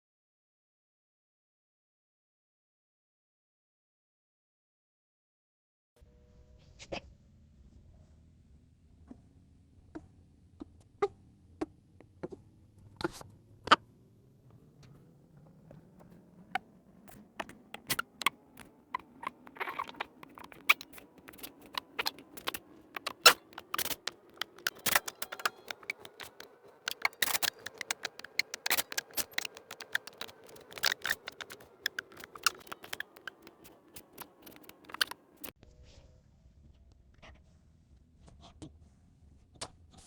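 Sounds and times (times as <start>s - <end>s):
clicks and scrapes on plastic trim: 15.8s - 35.5s.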